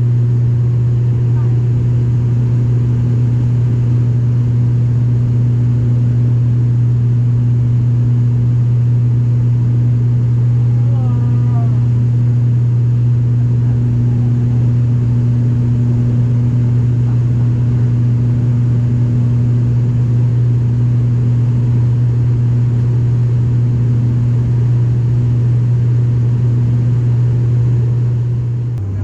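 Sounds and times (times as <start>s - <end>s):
turboprop cabin drone: 0.0s - 29.0s.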